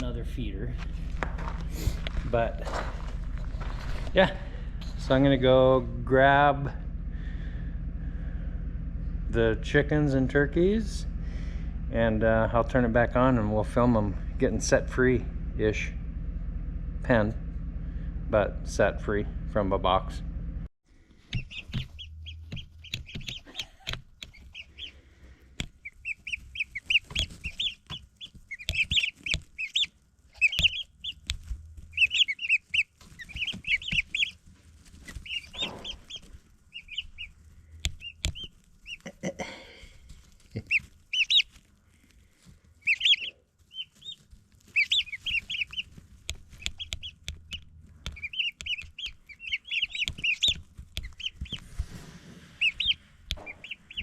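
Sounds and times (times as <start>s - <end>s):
chicks peeping: 0.0s - 8.5s, 21.1s - 54.0s
knocks and rustling: 0.7s - 5.2s, 30.5s - 38.9s, 49.9s - 54.0s.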